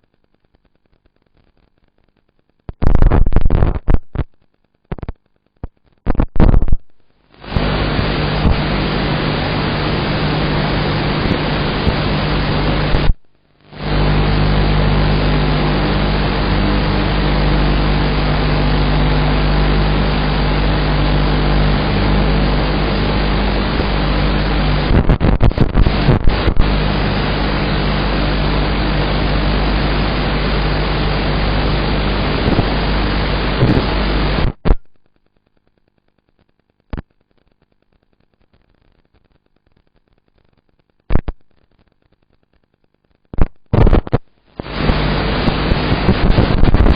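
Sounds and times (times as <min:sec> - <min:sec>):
signal crackling: 0:00.0 - 0:34.8, 0:43.3 - 0:46.9
static hiss: 0:00.0 - 0:46.9
low fixed hum: 0:07.0 - 0:34.6.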